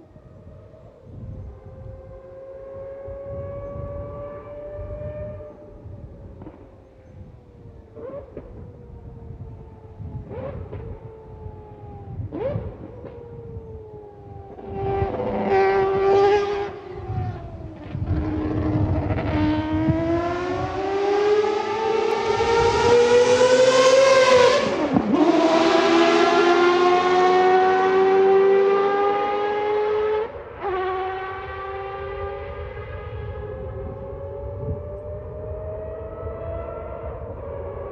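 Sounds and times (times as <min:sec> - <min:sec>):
rotary engine howling: 0:14.4 - 0:37.9.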